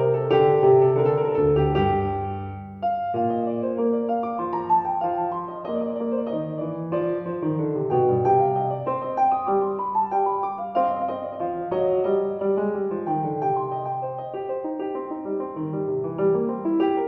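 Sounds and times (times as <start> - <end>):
gentle piano melody: 0.0 - 17.0.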